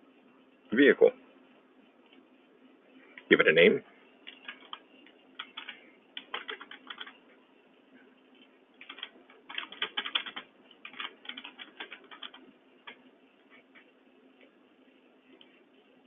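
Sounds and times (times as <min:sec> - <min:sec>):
typing on computer keyboard: 0:04.2 - 0:04.8, 0:05.4 - 0:07.2, 0:08.8 - 0:13.0.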